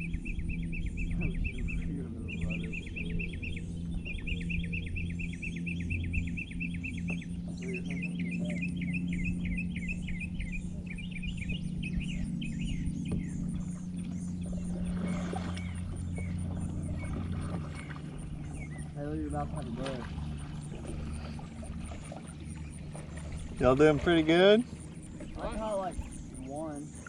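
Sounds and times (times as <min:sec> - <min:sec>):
songbird chirping: 0:00.0 - 0:27.0
steady low hum: 0:00.0 - 0:27.0.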